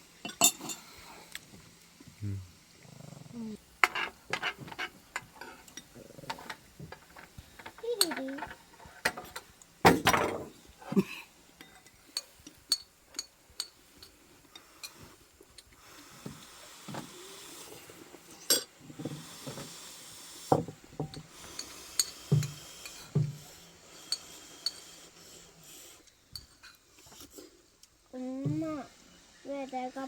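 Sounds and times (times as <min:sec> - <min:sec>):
utensils clinking on dishes: 0:00.2 - 0:00.9, 0:11.6 - 0:15.0, 0:18.4 - 0:18.7, 0:21.0 - 0:23.3.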